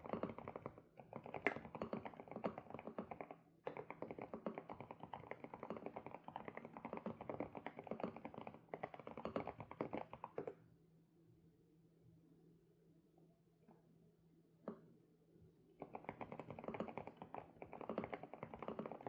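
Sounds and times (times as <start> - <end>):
mechanical keyboard typing: 15.8 - 19.0.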